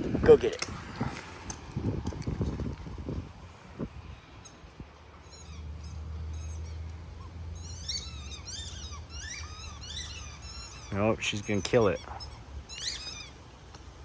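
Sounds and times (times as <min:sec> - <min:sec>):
squeaky dog toy squeaking: 0:05.2 - 0:13.4.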